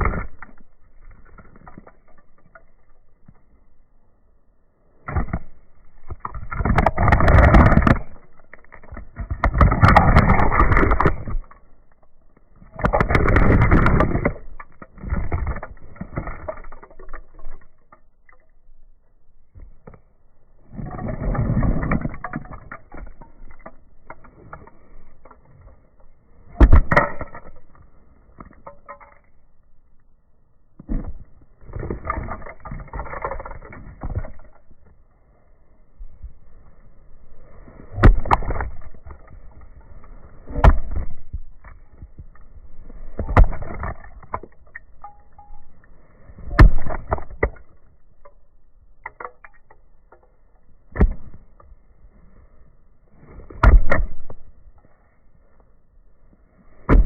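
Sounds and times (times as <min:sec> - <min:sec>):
boot sole scraping toy on asphalt: 0:00.0 - 0:01.8, 0:05.0 - 0:11.9, 0:12.5 - 0:17.5, 0:19.6 - 0:25.8, 0:30.8 - 0:35.0, 0:36.1 - 0:44.6
plastic and metal pieces breaking: 0:26.5 - 0:27.8.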